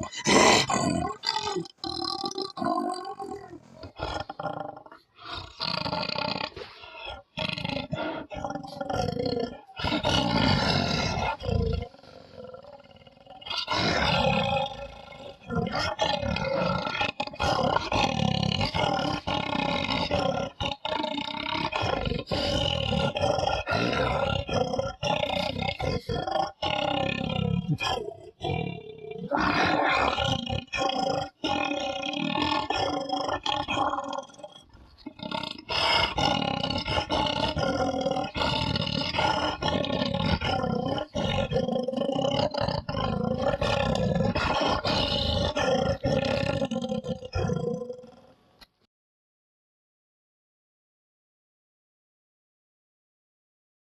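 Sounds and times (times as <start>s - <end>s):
person roaring into a tube: 0.0s - 4.9s
person roaring through a tube: 0.0s - 16.9s, 22.2s - 48.2s.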